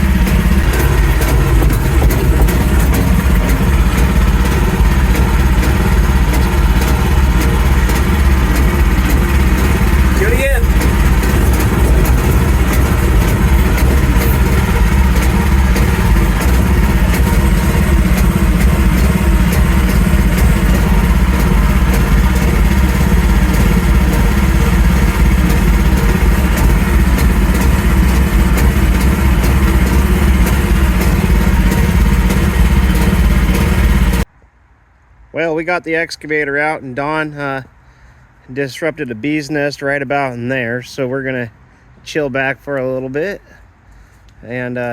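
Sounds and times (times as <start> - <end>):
light clatter: 0.0 - 34.3
mini excavator engine running: 0.0 - 34.3.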